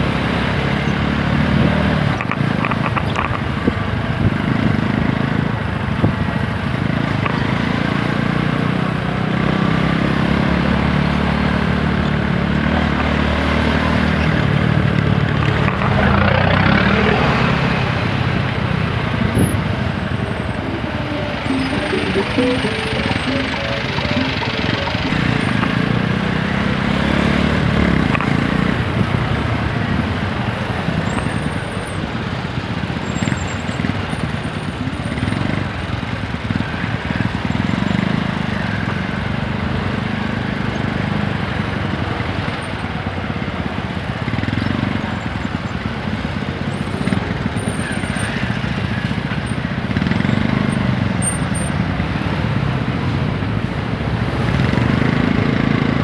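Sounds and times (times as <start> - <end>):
wind and road noise: 0.0 - 9.4, 12.0 - 21.4.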